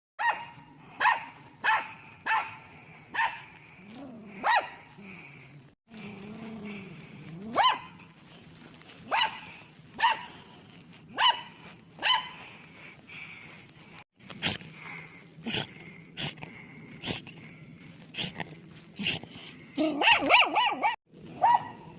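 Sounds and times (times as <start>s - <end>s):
dog barking: 0.2s - 3.5s, 4.4s - 4.8s, 7.5s - 8.0s, 9.1s - 10.4s, 11.1s - 12.4s, 19.8s - 21.9s
dog growling: 3.4s - 8.1s, 14.3s - 21.5s.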